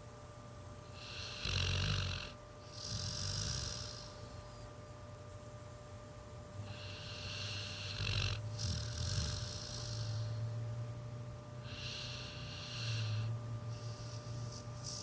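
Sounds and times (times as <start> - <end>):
dog snoring: 0.8 - 4.7, 6.5 - 10.7, 11.5 - 15.0.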